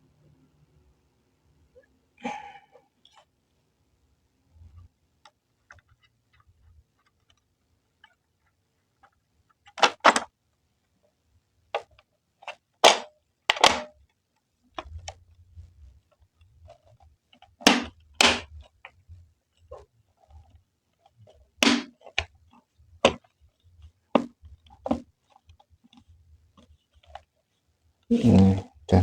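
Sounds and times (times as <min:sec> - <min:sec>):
faint handling rustle: 0:14.1 - 0:29.0.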